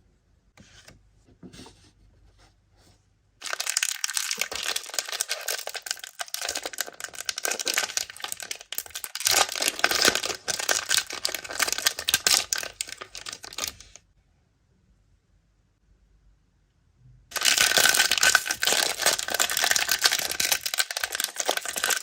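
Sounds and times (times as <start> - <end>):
plastic packaging crinkling and tearing: 3.4 - 14.0, 17.3 - 22.0.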